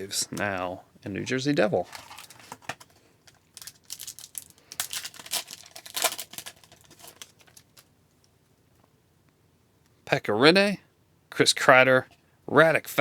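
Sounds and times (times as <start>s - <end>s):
wrapper tearing and crinkling: 1.8s - 7.9s.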